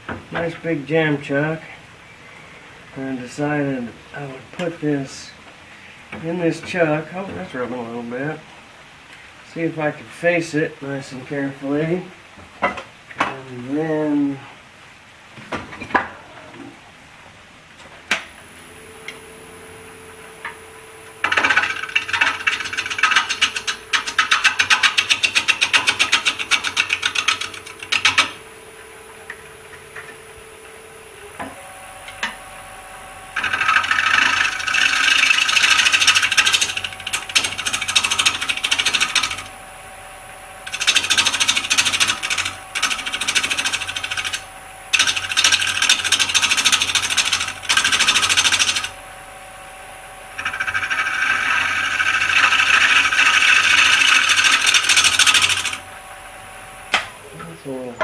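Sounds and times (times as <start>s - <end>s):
lathe motor hum: 18.4s - 57.6s
turning tool scraping wood: 21.2s - 28.4s, 33.3s - 39.6s, 40.6s - 49.0s, 50.3s - 55.9s.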